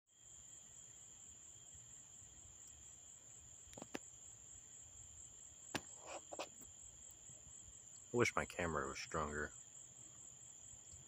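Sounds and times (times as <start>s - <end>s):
crickets chirring: 0.1s - 11.0s.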